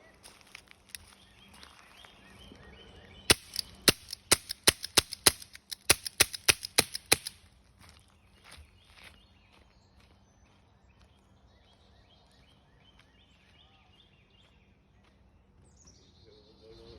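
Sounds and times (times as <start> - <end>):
air gun shots: 3.3 - 7.4.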